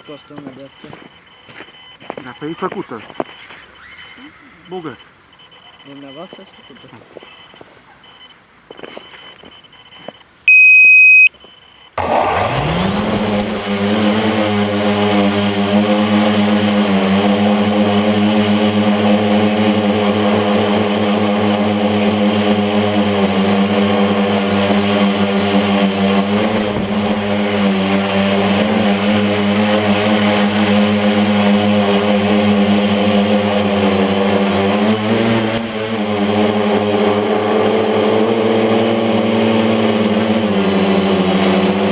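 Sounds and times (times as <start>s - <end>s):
short electronic beep: 0.0s - 12.0s
drone motors buzzing with high whine: 0.0s - 41.9s.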